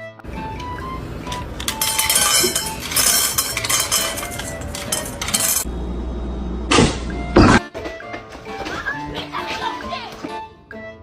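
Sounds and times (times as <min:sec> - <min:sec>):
steady low hum: 0:00.3 - 0:07.6
dishes and cutlery clattering: 0:01.2 - 0:05.7.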